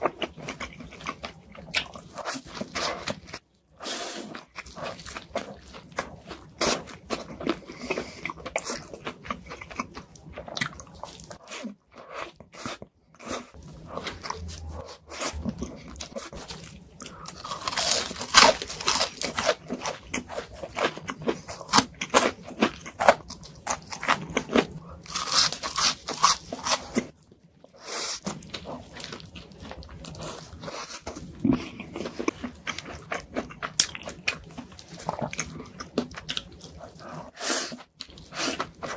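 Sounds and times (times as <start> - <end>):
crunchy bites and chewing: 4.4 - 27.1.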